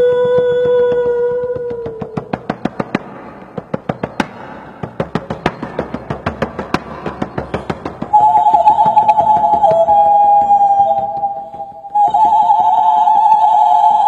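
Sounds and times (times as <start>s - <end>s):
hummed tone: 8.1s - 14.0s.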